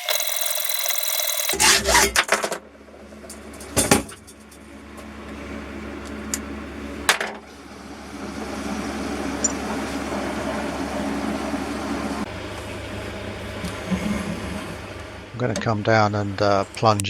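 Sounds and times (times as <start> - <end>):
milling machine humming: 0.0 - 17.0.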